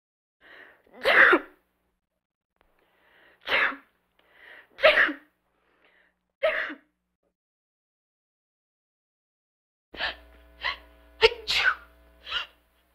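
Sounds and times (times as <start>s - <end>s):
woman sneezing: 0.9s - 1.6s, 3.4s - 3.9s, 4.8s - 5.3s, 6.4s - 6.9s, 10.0s - 12.6s.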